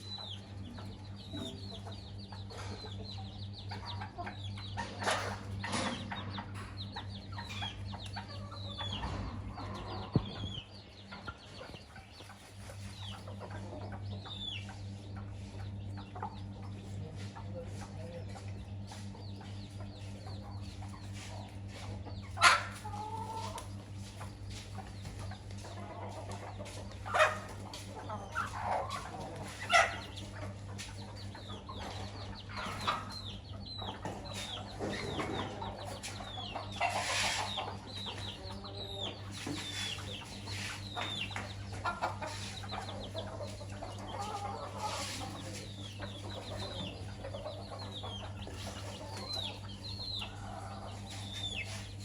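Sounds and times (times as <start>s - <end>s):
chicks peeping: 0.0s - 52.0s
hen clucking: 0.0s - 52.0s
sharp chicken calls: 20.0s - 23.7s, 25.8s - 52.0s.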